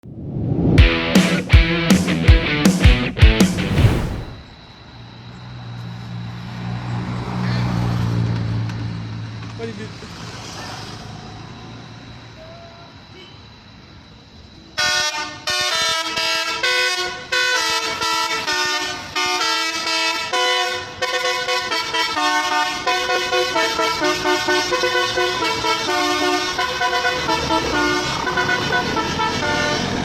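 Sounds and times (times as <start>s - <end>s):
low vehicle noise: 3.5s - 14.8s, 20.8s - 30.0s
multi-tone musical air horn: 14.8s - 30.0s.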